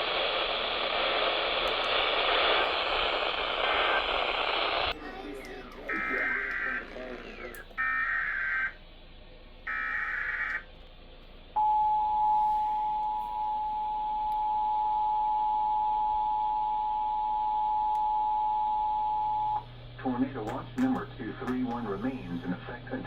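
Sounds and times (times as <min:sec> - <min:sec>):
screechy digital data tones: 0:07.8 - 0:08.8, 0:09.7 - 0:10.6.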